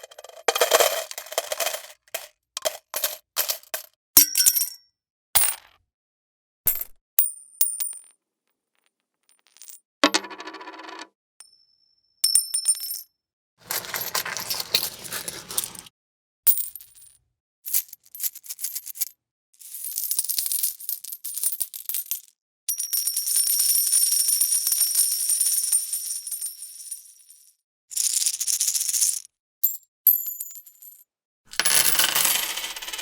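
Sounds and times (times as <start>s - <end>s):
many coins jingling: 0.0s - 3.8s, 13.6s - 15.9s
single coins clinking: 0.0s - 4.8s, 13.6s - 15.9s, 31.6s - 33.0s.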